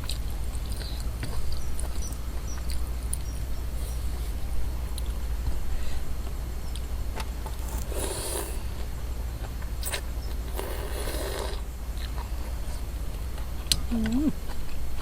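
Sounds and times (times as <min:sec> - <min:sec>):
person slurping noodle soup: 0:03.8 - 0:04.2, 0:07.6 - 0:08.7, 0:09.8 - 0:11.6.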